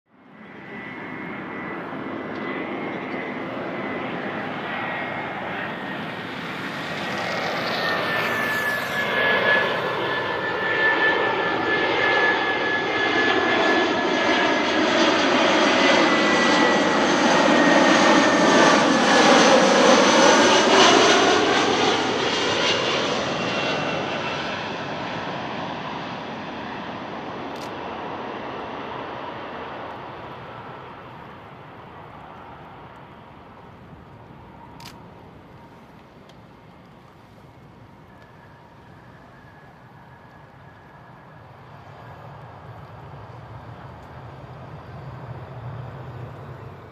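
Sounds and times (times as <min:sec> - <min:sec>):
jet airliner engine noise: 0:00.1 - 0:46.9
thin engine whine: 0:00.4 - 0:46.9.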